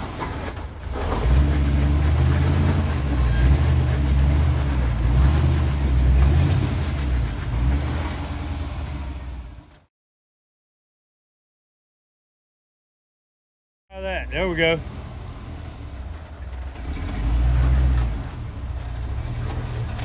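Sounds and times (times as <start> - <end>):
truck engine idling low: 13.9 - 16.8.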